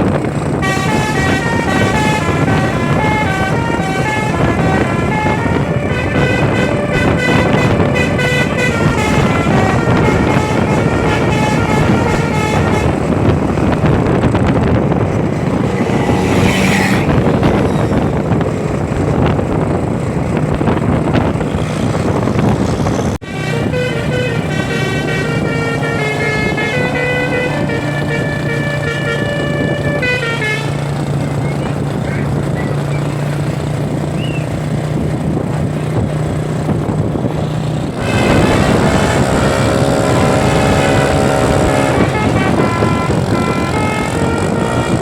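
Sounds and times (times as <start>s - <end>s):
bus engine: 0.0s - 45.0s
road noise: 0.0s - 45.0s
multi-note bus air horn tune: 0.5s - 18.2s, 23.2s - 31.4s, 38.0s - 45.0s.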